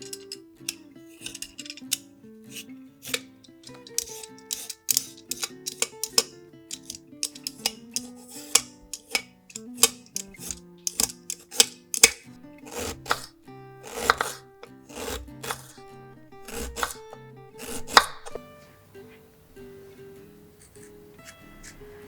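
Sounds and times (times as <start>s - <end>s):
background music: 0.0s - 22.0s
knife chopping on cutting board: 2.5s - 18.4s.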